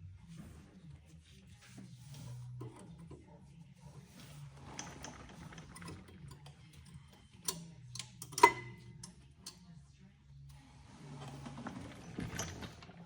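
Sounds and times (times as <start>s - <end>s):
small metal clicks and taps: 6.4s - 9.6s.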